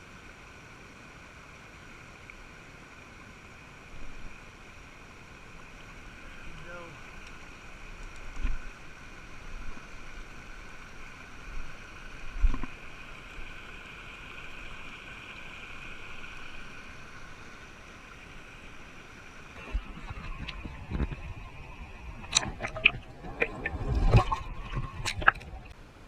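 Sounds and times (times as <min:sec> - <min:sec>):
stream water over rocks: 0:00.0 - 0:26.0
low bumps: 0:19.6 - 0:25.8.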